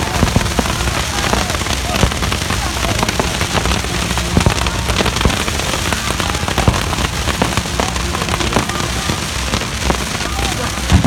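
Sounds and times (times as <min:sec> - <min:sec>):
firecrackers crackling: 0:00.0 - 0:11.0
loud firework bangs: 0:00.0 - 0:11.0.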